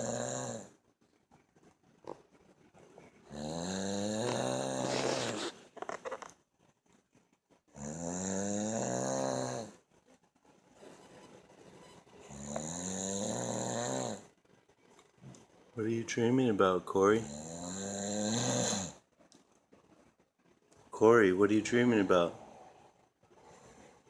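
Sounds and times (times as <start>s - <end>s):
person snoring: 0.0s - 0.7s, 3.3s - 5.6s, 7.8s - 9.7s, 12.3s - 14.2s, 17.2s - 19.0s.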